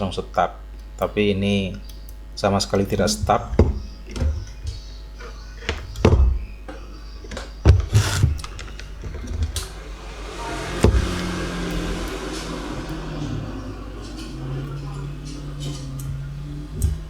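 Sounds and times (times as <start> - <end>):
steady hiss: 7.6 - 17.0.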